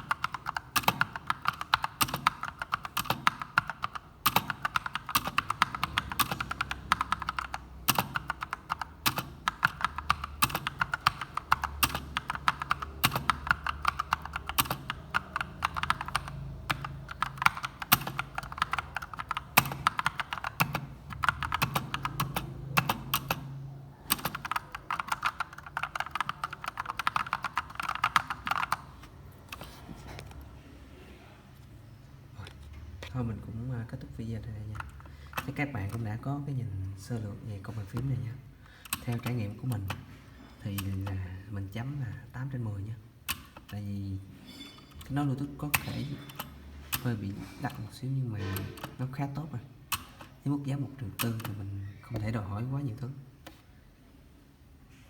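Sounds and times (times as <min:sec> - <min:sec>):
mechanical keyboard typing: 0:00.0 - 0:29.7, 0:33.3 - 0:36.5, 0:37.6 - 0:42.0, 0:43.2 - 0:43.9, 0:45.0 - 0:52.4.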